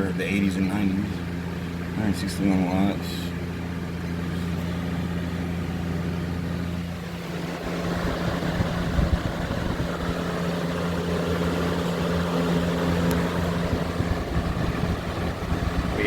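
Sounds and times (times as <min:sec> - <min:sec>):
box fan motor hum: 0:00.0 - 0:16.0.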